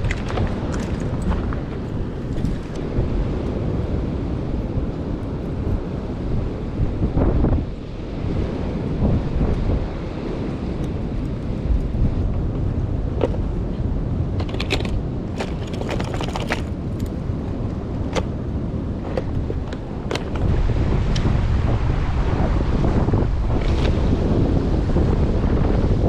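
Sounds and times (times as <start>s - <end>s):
wind buffeting microphone: 0.0s - 26.0s
sharp clicks and knocks: 14.4s - 17.1s.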